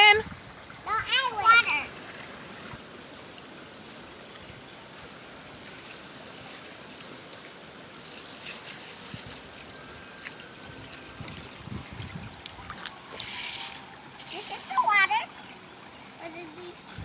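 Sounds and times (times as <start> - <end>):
stream running: 0.0 - 17.0.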